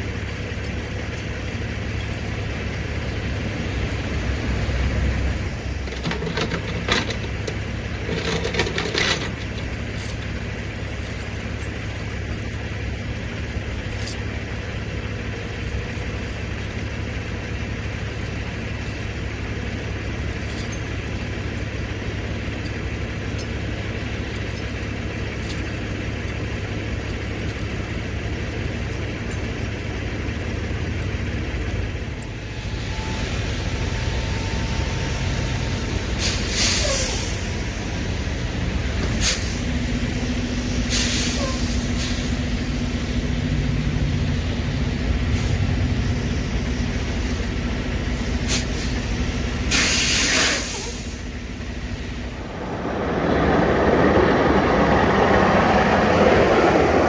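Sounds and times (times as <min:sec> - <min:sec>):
diesel truck engine droning: 0:00.0 - 0:57.0
air brake hisses: 0:36.2 - 0:37.7, 0:39.2 - 0:39.7, 0:40.9 - 0:42.9, 0:48.4 - 0:51.4.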